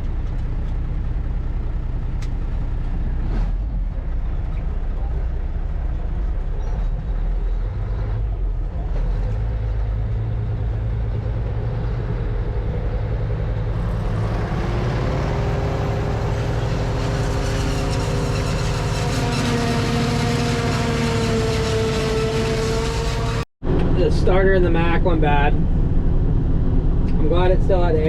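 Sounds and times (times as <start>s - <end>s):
heavy diesel engine running: 0.0s - 28.0s
rising machine whine: 12.6s - 24.0s
machinery noise: 13.6s - 24.0s.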